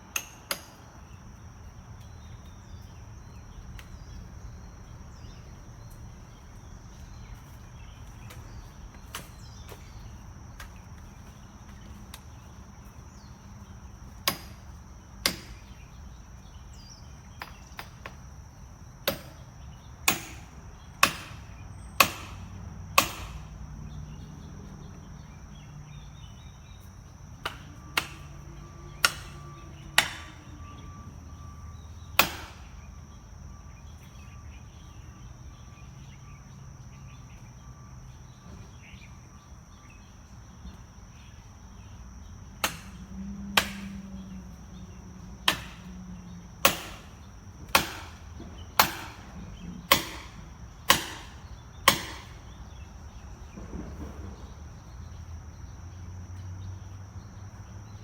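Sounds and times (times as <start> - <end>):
sharp knocks or chops: 47.7 - 48.2, 49.9 - 52.4.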